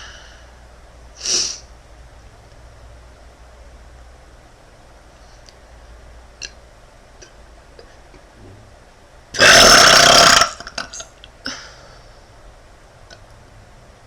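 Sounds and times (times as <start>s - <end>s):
woman burping: 9.4s - 11.7s.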